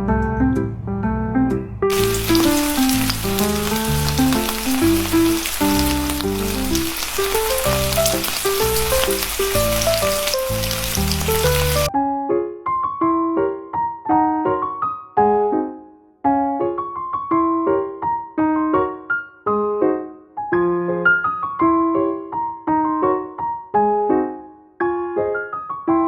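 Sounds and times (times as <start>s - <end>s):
piano melody: 1.6s - 12.2s
loud crackling hiss: 1.9s - 11.9s.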